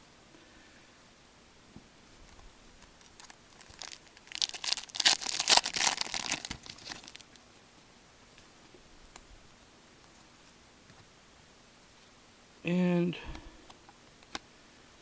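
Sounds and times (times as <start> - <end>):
foil wrapper crinkling: 2.8 - 7.4.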